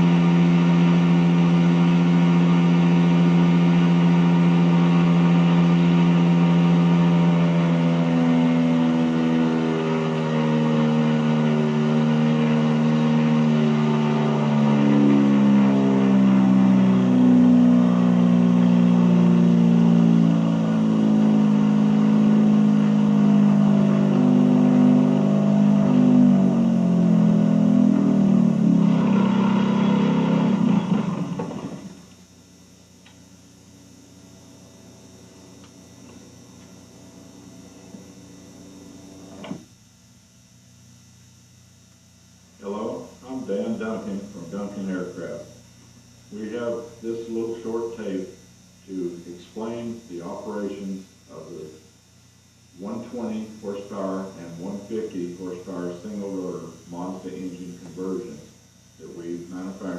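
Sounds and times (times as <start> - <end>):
rotary aircraft engine running: 0.0 - 32.7, 52.8 - 59.9
faint hum: 0.0 - 59.9
tape hiss: 17.5 - 59.9.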